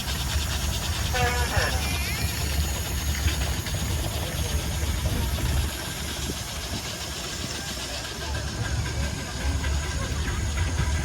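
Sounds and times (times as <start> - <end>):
steam engines running: 0.0 - 11.0
wind buffeting microphone: 2.4 - 11.0.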